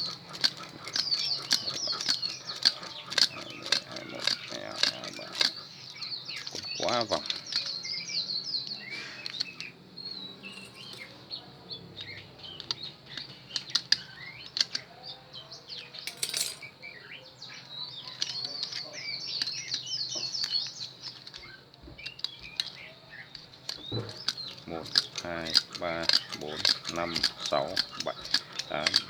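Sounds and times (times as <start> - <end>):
small metal clicks and taps: 0.0 - 5.6, 10.5 - 11.2, 12.0 - 14.9, 16.0 - 16.7, 18.1 - 29.0
small birds twittering: 0.0 - 29.0.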